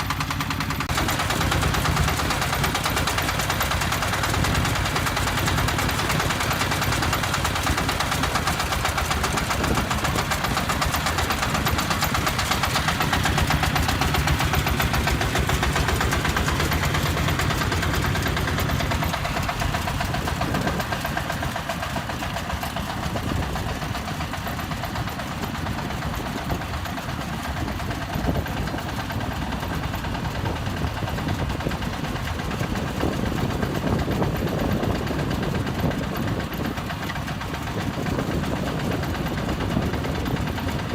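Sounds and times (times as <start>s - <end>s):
concrete mixer engine running: 0.0s - 40.9s.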